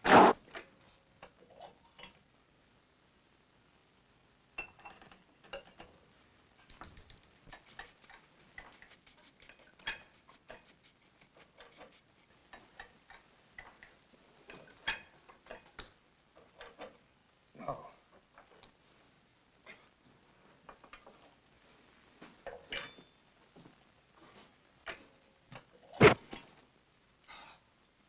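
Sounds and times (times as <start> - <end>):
light clicks and taps: 6.6 - 16.0.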